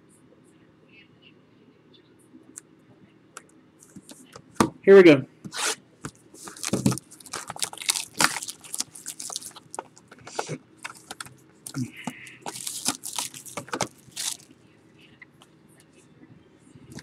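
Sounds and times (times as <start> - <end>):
cards rustling: 6.3 - 14.5
wrapper crinkling and tearing: 6.4 - 10.1, 10.8 - 14.5.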